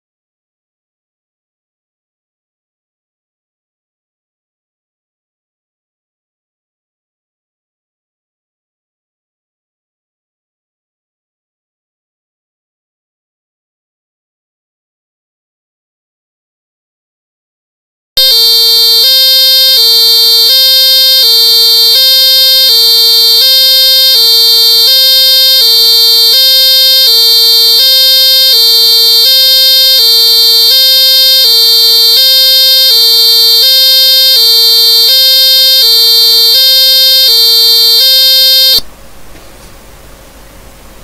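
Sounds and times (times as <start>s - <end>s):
buzzy electronic siren: 18.2s - 38.8s.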